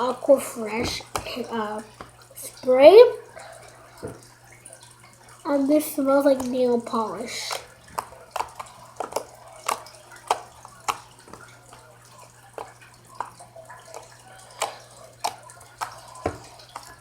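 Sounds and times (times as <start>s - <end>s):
slime squelching wet clicks: 7.2s - 17.0s.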